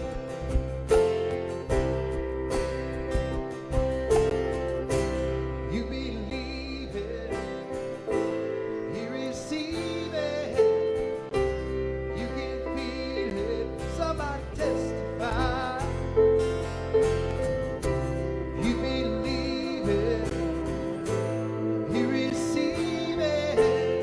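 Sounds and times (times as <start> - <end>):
strummed guitar: 0.0 - 24.0
person singing with vibrato: 5.2 - 16.8, 17.9 - 24.0.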